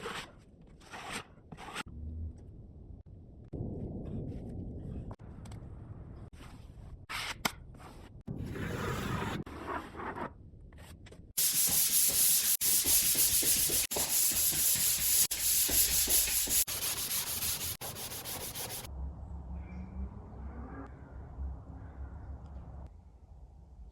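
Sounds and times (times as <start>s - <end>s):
sanding scratchy rubbing: 11.4s - 18.9s.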